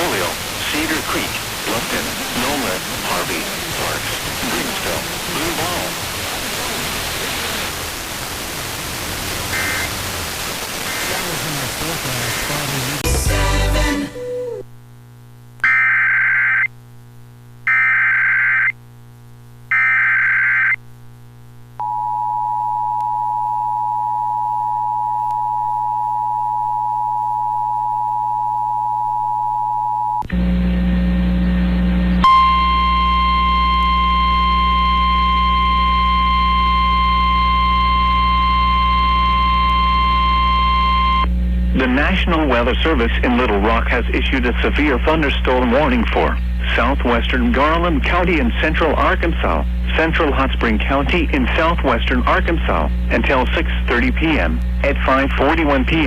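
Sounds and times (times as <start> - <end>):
radio static: 0.0 - 13.9, 30.3 - 56.0
digital header bursts: 0.0 - 14.0
loud hum: 0.0 - 14.7, 30.2 - 56.0
two-tone attention signal: 32.2 - 41.3.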